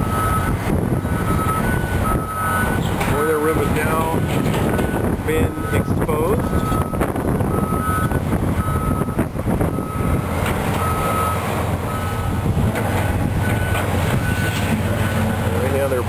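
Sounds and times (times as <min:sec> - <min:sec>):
backup alarm beeping: 0:00.0 - 0:10.2
machine engine rumble: 0:00.0 - 0:16.0.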